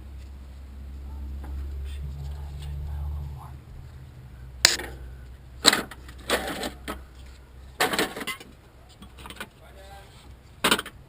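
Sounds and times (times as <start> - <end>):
low hum: 0.0 - 7.8.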